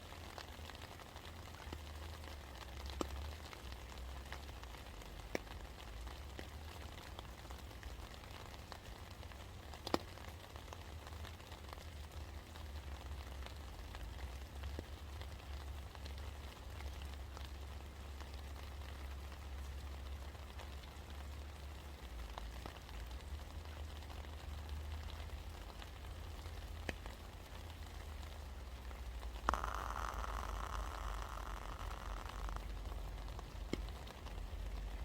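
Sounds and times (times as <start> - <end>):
steady rain: 0.0 - 35.0
low steady rumble: 10.4 - 35.0
drops ticking on hard surface: 29.2 - 34.9.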